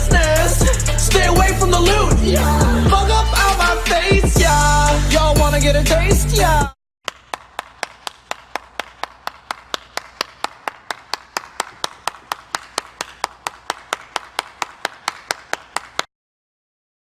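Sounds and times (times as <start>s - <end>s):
steady hand claps: 7.0s - 16.1s.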